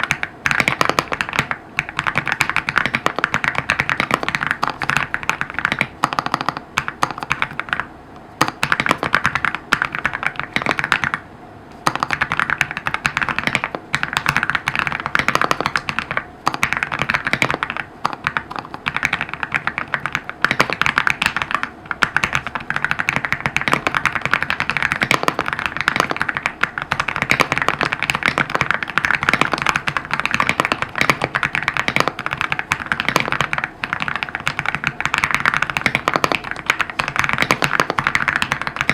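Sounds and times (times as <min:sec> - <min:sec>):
fast typing on mechanical keyboard: 0:00.0 - 0:11.2, 0:11.8 - 0:38.9.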